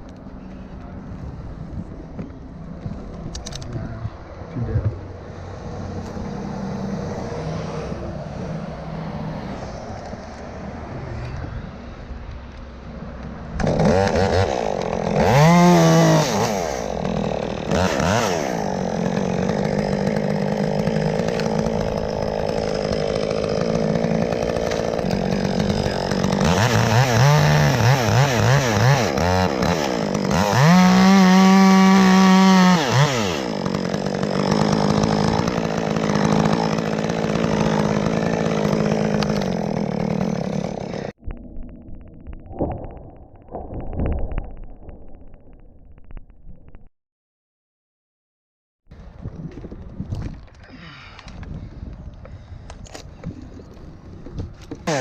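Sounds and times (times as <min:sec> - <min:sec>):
chainsaw engine idling and revving: 0:05.4 - 0:09.8, 0:13.5 - 0:41.2, 0:54.8 - 0:55.0.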